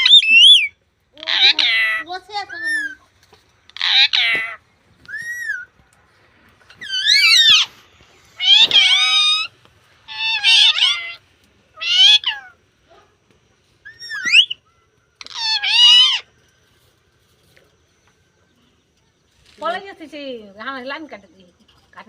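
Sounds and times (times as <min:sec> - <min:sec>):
high meow-like animal calls: 0:06.8 - 0:07.7, 0:08.4 - 0:09.5, 0:10.1 - 0:11.2, 0:11.8 - 0:12.6, 0:13.9 - 0:16.3.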